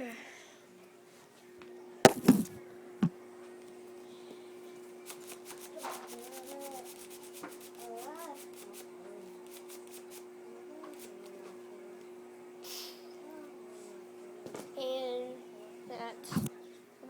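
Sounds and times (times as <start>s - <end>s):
hands scratching paper and tape: 5.1s - 8.8s.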